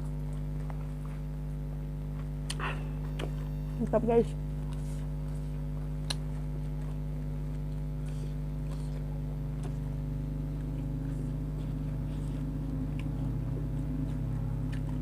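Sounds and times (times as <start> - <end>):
low motor hum: 0.0 - 15.0
faint eating clicks: 6.0 - 9.9, 10.5 - 15.0.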